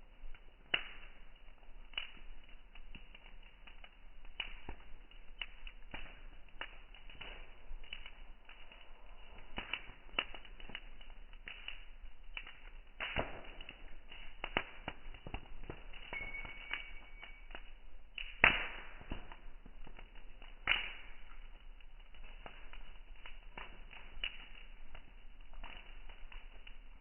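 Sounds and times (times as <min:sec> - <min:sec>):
bonfire crackling: 0:00.0 - 0:27.0
loud sharp cracks: 0:13.0 - 0:13.8, 0:18.2 - 0:19.3, 0:20.6 - 0:21.1.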